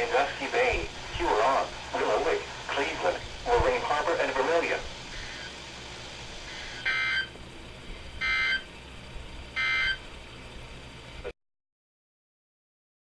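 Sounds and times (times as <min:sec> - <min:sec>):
faint radio hiss: 0:00.0 - 0:08.3
raspy two-tone digital bursts: 0:06.5 - 0:07.3, 0:08.2 - 0:08.7, 0:09.6 - 0:10.0.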